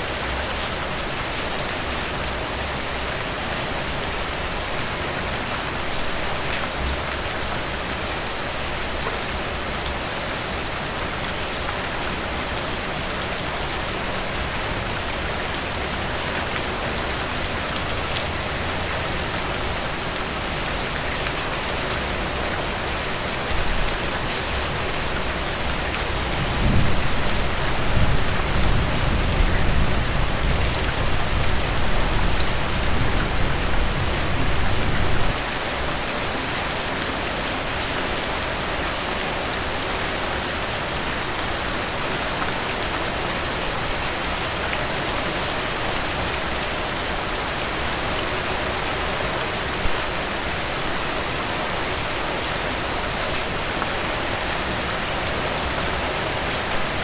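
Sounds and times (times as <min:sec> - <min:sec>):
heavy rain falling: 0:00.0 - 0:57.0
low rumble of thunder: 0:26.3 - 0:35.4.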